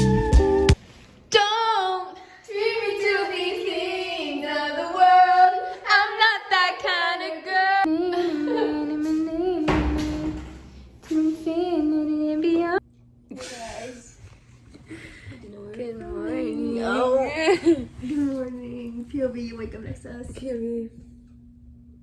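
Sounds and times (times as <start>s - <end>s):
woman singing: 1.3s - 12.8s, 15.4s - 20.7s.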